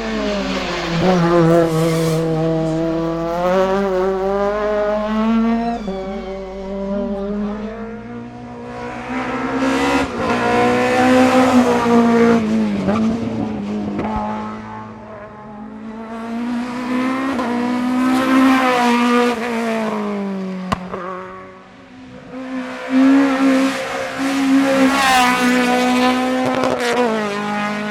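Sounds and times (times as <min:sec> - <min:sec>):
racing car engine revving: 0:00.0 - 0:27.9
tyre squeal: 0:00.2 - 0:08.1.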